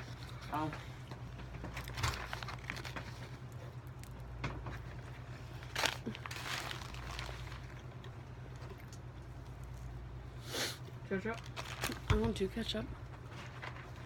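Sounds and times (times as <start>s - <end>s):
steady low hum: 0.0s - 14.0s
paper wrapper rustling: 1.5s - 3.6s, 4.8s - 7.9s, 11.2s - 12.6s, 13.2s - 14.0s.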